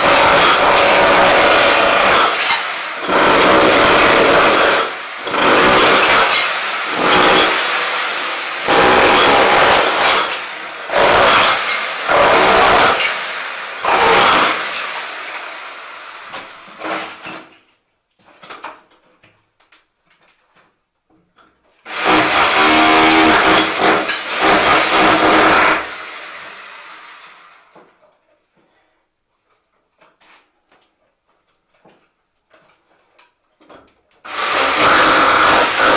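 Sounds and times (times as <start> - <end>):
rotary hammer chiselling tiles: 0.0 - 7.8, 8.6 - 13.2, 13.8 - 14.9, 16.2 - 25.9, 32.5 - 35.9.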